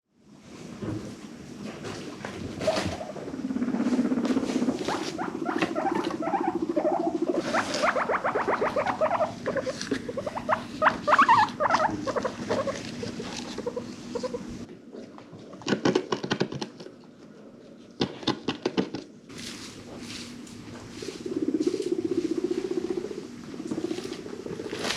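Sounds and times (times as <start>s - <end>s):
guinea pig low pulsing buzz: 0.2s - 14.7s, 19.3s - 24.9s
guinea pigs squeaking: 2.6s - 14.6s, 21.0s - 24.9s.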